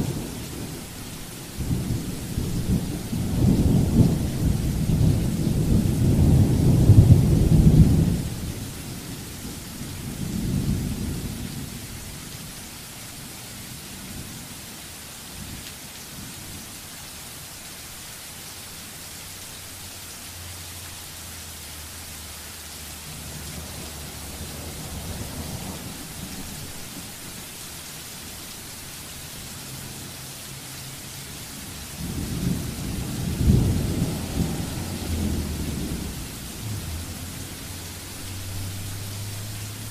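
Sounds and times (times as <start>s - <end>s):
rolling thunder: 0.0s - 12.2s, 23.1s - 27.1s, 31.7s - 37.7s
rain hissing: 0.0s - 39.9s.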